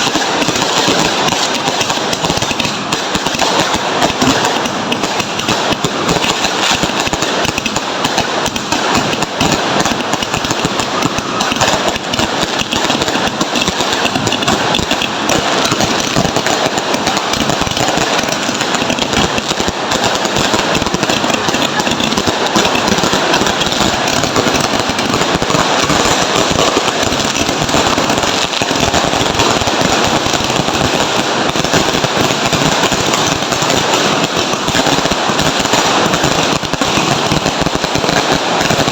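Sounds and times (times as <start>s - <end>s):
firecrackers crackling: 0.0s - 38.9s.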